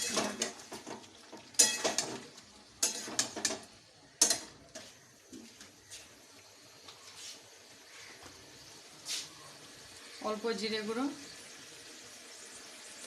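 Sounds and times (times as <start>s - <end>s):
metal spoon scraping a pan: 0.0s - 5.7s
faint sizzling: 0.0s - 13.0s.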